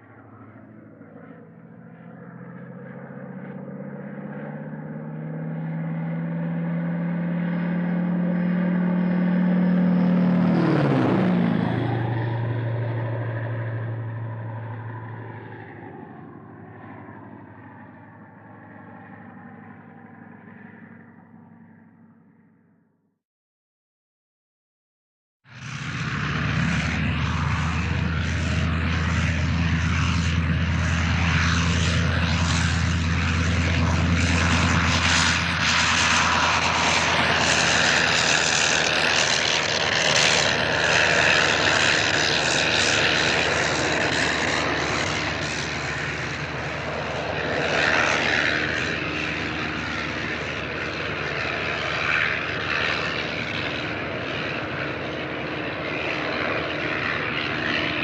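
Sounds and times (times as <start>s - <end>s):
airplane engine drone: 0.0s - 22.6s, 25.5s - 58.0s.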